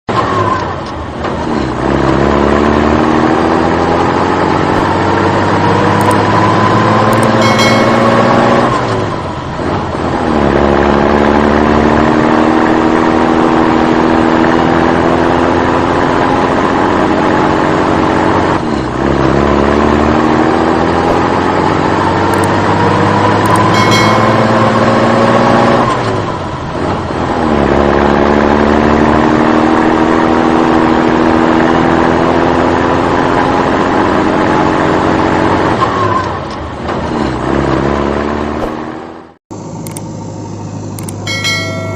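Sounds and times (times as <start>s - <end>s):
vehicle engine accelerating: 0.1s - 41.9s
brief high ring: 7.4s - 8.6s, 23.7s - 24.7s, 41.3s - 41.9s.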